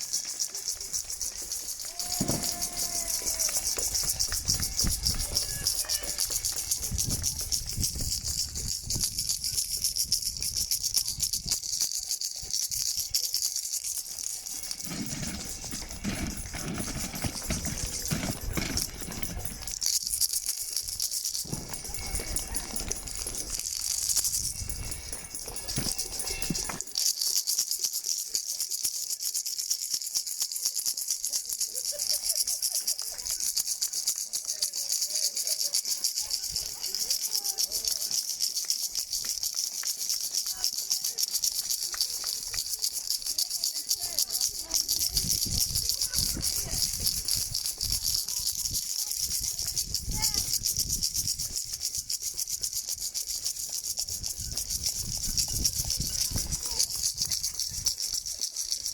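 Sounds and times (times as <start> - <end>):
noisemakers rattling: 0.0 - 30.1, 30.7 - 58.9
faint voices calling: 0.3 - 7.6, 21.4 - 26.8
crowd clapping: 2.0 - 6.5.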